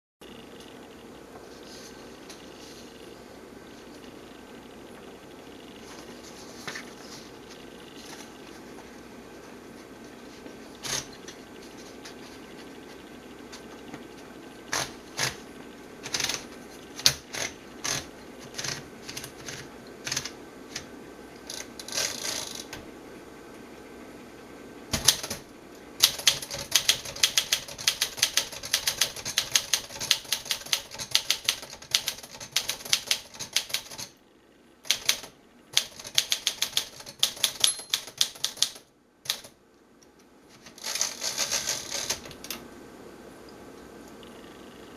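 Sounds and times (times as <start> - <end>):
manual typewriter keys striking: 16.0 - 20.9, 24.9 - 25.4, 26.0 - 34.1, 34.9 - 39.6, 40.6 - 42.6.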